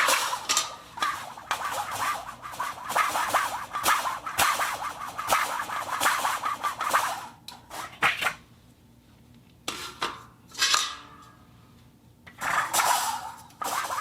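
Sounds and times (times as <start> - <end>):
metal scraping and clanking: 0.0 - 8.3, 12.4 - 14.0
rasping metal scrapes: 0.0 - 8.3.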